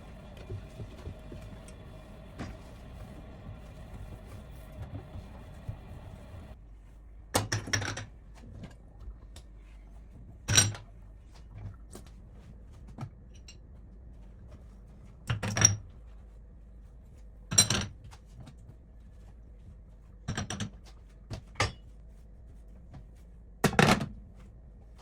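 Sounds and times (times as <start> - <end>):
faint steady hum: 0.0 - 6.6.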